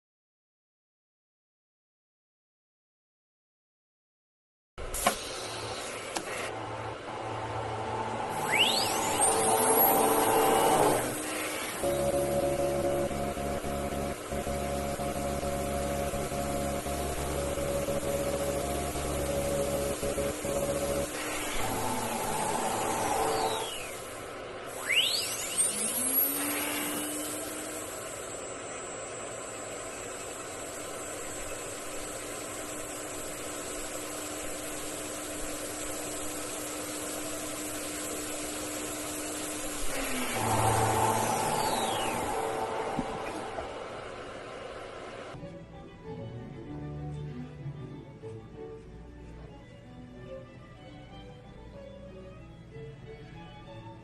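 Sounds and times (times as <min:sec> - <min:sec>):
small motor humming: 0:05.0 - 0:45.4.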